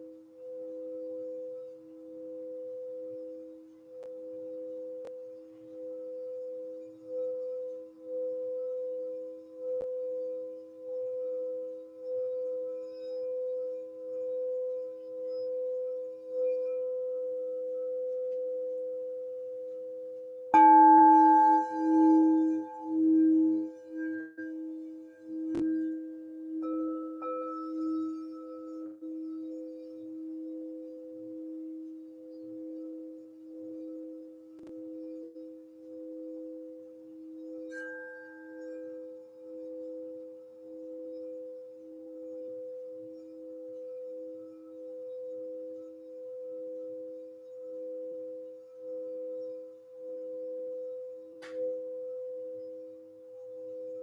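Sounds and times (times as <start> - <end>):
light strike on singing bowl: 20.6 - 24.4
louder bowl with higher ring: 20.6 - 31.7
singing bowls ringing: 20.6 - 54.0.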